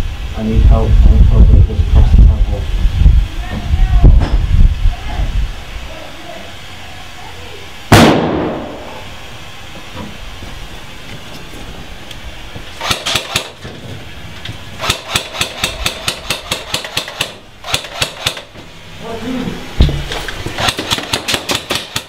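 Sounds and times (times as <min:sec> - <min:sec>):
airsoft gunfire: 0:07.9 - 0:08.8, 0:12.8 - 0:13.6, 0:14.8 - 0:18.5, 0:20.6 - 0:22.0
loud echoing bang: 0:07.9 - 0:09.0.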